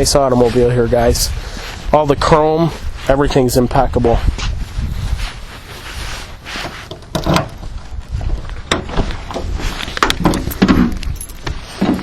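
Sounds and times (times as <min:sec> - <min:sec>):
wind buffeting microphone: 0:00.0 - 0:12.0
sharp clicks and knocks: 0:08.6 - 0:12.0.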